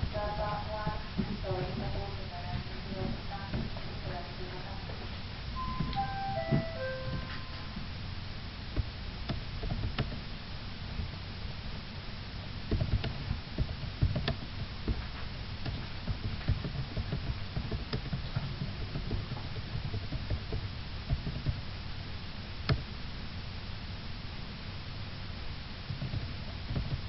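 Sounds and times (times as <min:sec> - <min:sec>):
steady low hum: 0:00.0 - 0:27.0
light clicks and knocks: 0:12.7 - 0:21.6.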